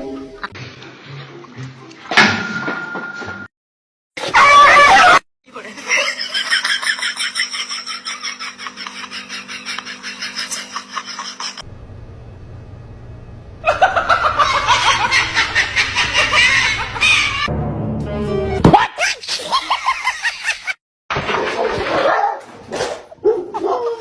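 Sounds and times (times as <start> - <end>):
people laughing: 4.8 - 11.6, 13.6 - 17.5, 18.8 - 20.8
low hum: 11.6 - 18.6.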